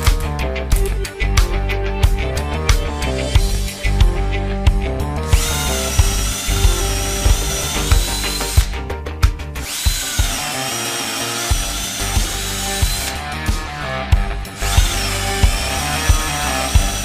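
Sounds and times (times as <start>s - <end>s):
cordless drill motor whining: 5.2s - 8.8s, 9.6s - 13.6s, 14.5s - 17.0s.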